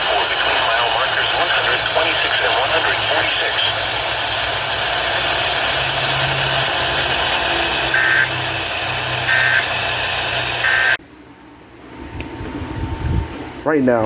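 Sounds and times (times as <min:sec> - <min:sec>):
radio hiss and hum: 0:00.0 - 0:11.0
short data tone bursts: 0:07.9 - 0:08.4, 0:09.3 - 0:09.7, 0:10.6 - 0:11.0.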